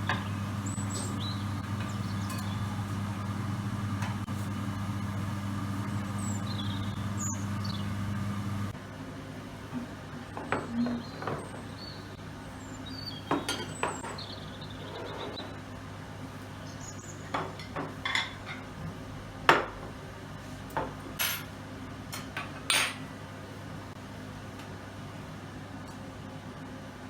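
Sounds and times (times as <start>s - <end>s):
dishes and cutlery clinking: 17.4s - 18.7s, 21.2s - 21.5s, 22.2s - 23.0s.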